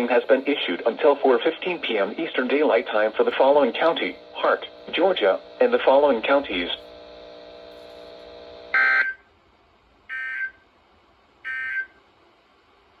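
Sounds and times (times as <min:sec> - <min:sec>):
steady hum: 0:00.0 - 0:10.1.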